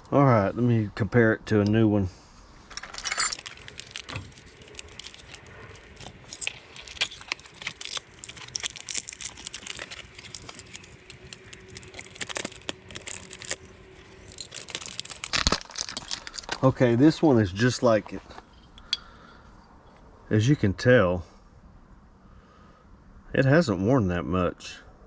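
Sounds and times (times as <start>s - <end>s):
small metallic clicks and clinks: 3.0s - 16.2s
light rustling: 3.1s - 16.4s.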